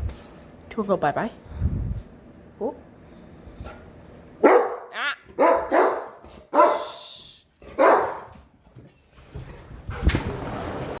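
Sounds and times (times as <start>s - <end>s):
dog barking: 4.4s - 6.9s, 7.7s - 8.4s.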